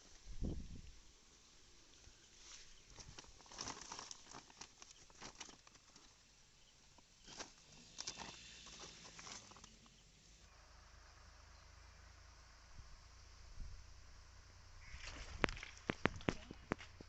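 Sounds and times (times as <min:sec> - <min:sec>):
faint clicks and rustles: 0:01.8 - 0:10.1, 0:14.8 - 0:17.0.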